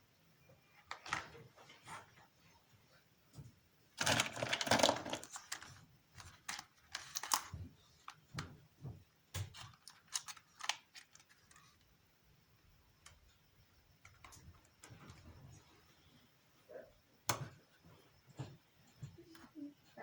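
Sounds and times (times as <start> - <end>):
packaging rustling: 4.0 - 8.4, 9.4 - 11.8.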